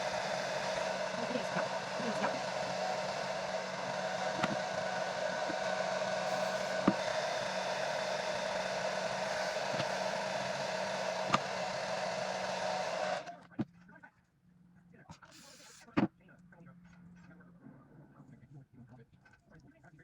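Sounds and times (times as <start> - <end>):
hair dryer blowing: 0.0 - 13.3.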